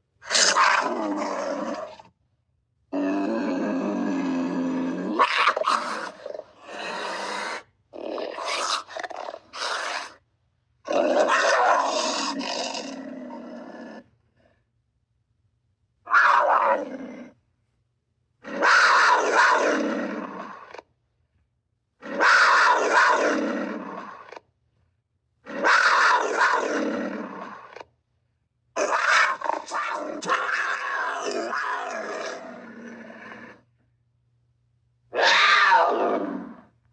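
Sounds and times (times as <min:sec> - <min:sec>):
panther rough calls: 0:02.9 - 0:10.2, 0:35.1 - 0:36.7.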